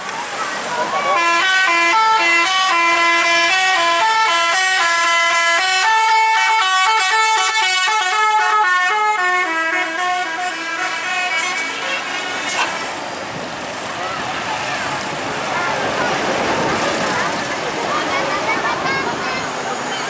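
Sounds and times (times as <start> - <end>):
multi-tone musical bus horn: 0.9 - 13.1.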